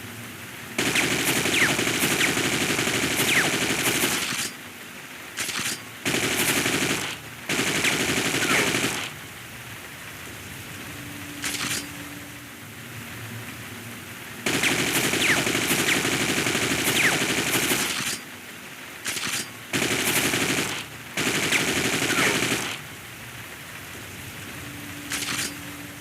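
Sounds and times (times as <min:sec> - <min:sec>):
automatic gunfire: 0:00.8 - 0:04.5, 0:05.4 - 0:09.2, 0:14.5 - 0:18.2, 0:19.1 - 0:22.8.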